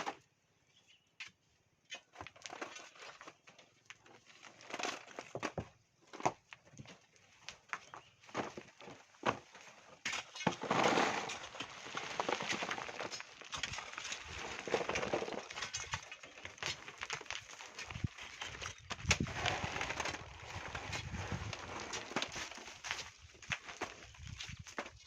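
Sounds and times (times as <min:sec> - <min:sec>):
hand tools digging into sand: 0:10.2 - 0:15.6.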